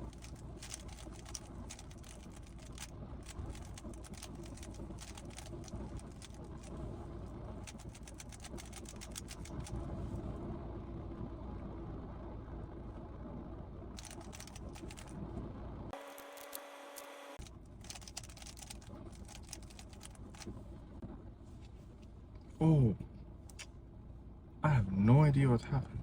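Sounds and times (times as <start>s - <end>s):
puzzle cube plastic clicking: 0.0s - 6.6s, 7.6s - 9.8s, 14.0s - 15.1s, 17.8s - 20.5s
low background rumble: 0.0s - 16.0s, 17.3s - 26.0s.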